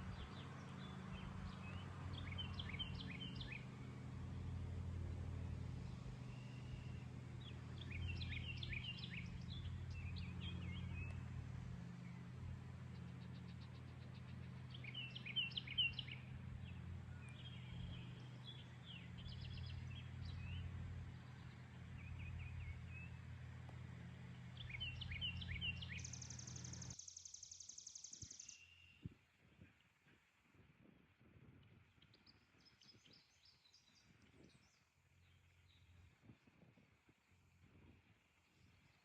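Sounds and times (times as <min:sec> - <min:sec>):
low outdoor rumble: 0:00.0 - 0:27.0
songbirds chirping and whistling: 0:00.0 - 0:29.2, 0:31.8 - 0:36.3.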